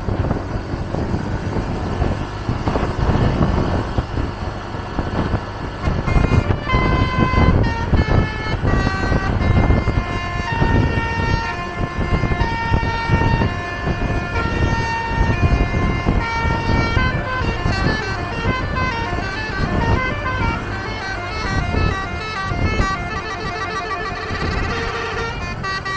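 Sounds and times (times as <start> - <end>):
engine and road rumble: 0.0 - 25.9
bus horn playing a tune: 5.0 - 25.9.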